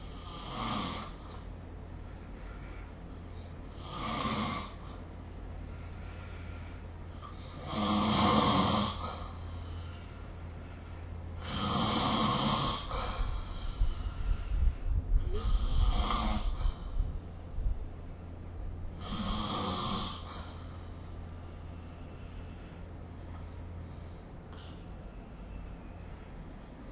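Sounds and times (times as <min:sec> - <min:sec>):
steady low hum: 0:00.0 - 0:26.9
person snoring: 0:00.2 - 0:01.4, 0:03.7 - 0:04.9, 0:07.5 - 0:09.2, 0:11.4 - 0:13.7, 0:15.3 - 0:16.9, 0:19.0 - 0:20.6
low uneven rumble: 0:04.8 - 0:07.7, 0:08.9 - 0:11.5, 0:12.8 - 0:26.9.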